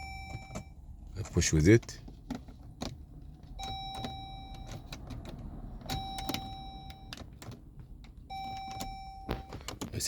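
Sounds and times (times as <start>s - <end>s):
dashboard warning chime: 0.0s - 1.5s, 3.5s - 5.0s, 5.9s - 7.4s, 8.2s - 10.0s.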